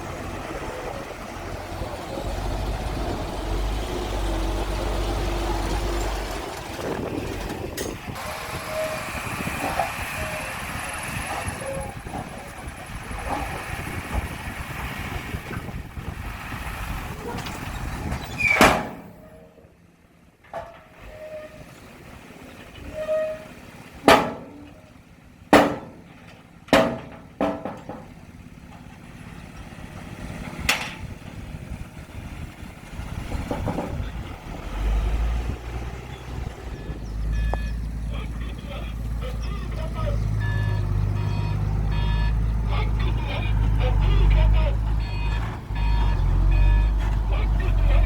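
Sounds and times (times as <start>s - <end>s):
heavy earthmoving machinery running: 0.0s - 48.0s
loud metallic bangs: 17.6s - 19.5s, 22.9s - 28.3s.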